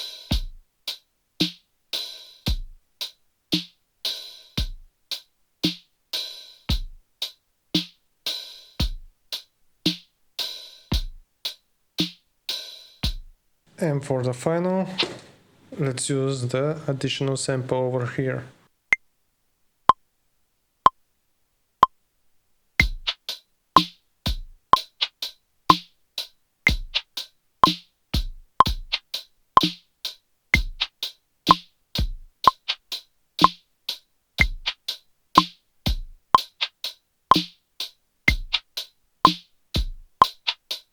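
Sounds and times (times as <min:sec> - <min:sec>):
finger-drummed electronic beat: 0:00.0 - 0:00.7, 0:02.5 - 0:05.9, 0:06.7 - 0:07.1, 0:07.8 - 0:10.1, 0:10.9 - 0:11.3, 0:22.8 - 0:26.0, 0:26.7 - 0:29.9, 0:30.6 - 0:40.9.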